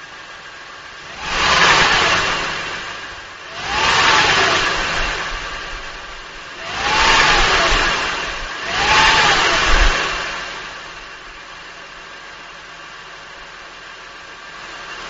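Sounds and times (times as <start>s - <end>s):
car engine idling: 0.0s - 15.0s
car engine revving: 0.8s - 11.6s.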